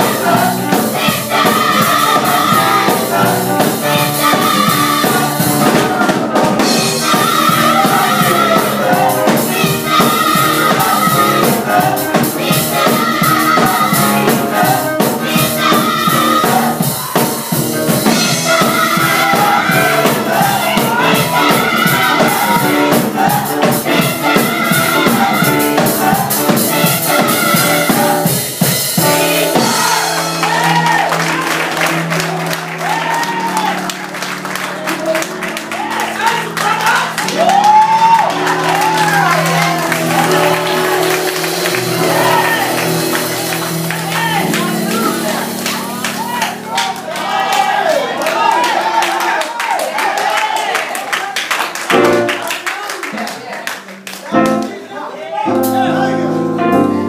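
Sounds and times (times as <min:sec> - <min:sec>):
drums steady beat: 0:00.0 - 0:31.3, 0:39.0 - 0:46.7
gospel choir singing: 0:00.0 - 0:50.8.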